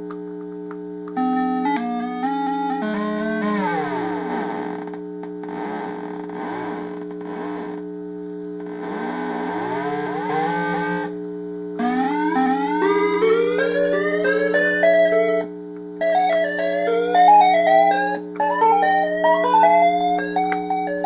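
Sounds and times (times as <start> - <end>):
droning electronic hum: 0.0 - 21.0
rising toy melody notes: 1.2 - 4.4, 11.8 - 21.0
warbling glitchy electronic tones: 1.2 - 7.9, 8.6 - 11.2, 11.8 - 21.0.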